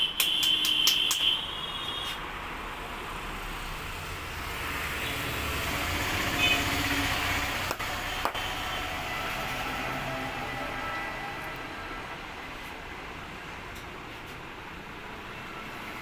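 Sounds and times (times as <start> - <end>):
street traffic: 0.0 - 16.0.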